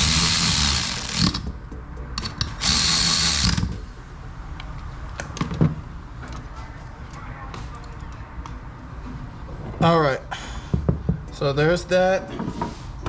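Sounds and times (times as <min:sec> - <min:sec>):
power tool running: 0:00.0 - 0:01.6, 0:02.2 - 0:04.0.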